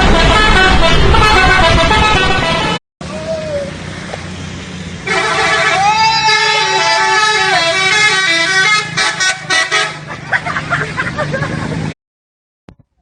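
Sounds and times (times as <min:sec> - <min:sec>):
musical bus horn tune: 0:00.0 - 0:02.8, 0:05.0 - 0:10.2
people shouting: 0:03.0 - 0:03.8, 0:05.5 - 0:07.8.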